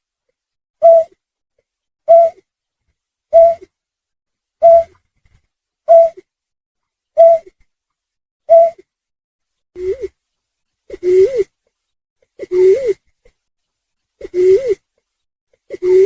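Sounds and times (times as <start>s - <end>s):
snipe call lure: 0.8s - 1.2s, 2.1s - 2.4s, 3.3s - 3.6s, 4.6s - 5.0s, 5.9s - 6.2s, 7.2s - 7.5s, 8.5s - 8.8s, 12.4s - 13.0s.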